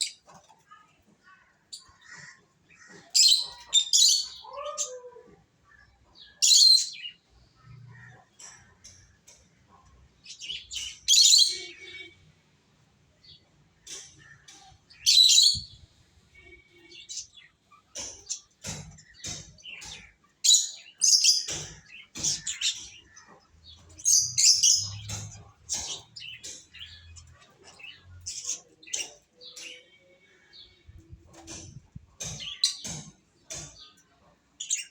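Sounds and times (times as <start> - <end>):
lovebirds chirping: 13.2 - 34.9.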